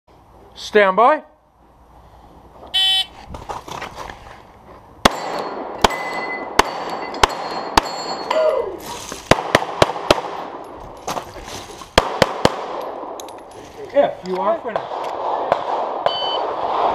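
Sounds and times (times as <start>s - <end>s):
pistol shots with echo: 5.0s - 8.2s, 12.0s - 13.2s, 14.7s - 16.9s
shot timer beep: 16.1s - 16.4s.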